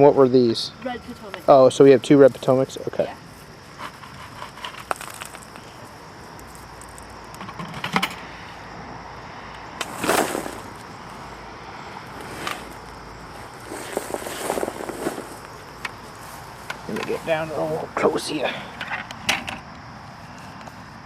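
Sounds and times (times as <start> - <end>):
loose soil rustling and scraping: 0.8 - 8.4, 9.8 - 19.0
soil dumped out rushing: 9.8 - 11.0.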